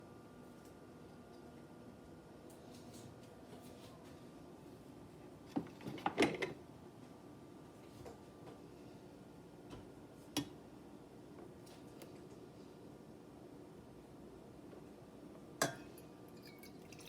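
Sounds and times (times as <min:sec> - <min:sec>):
faint steady hum: 0:00.0 - 0:17.0.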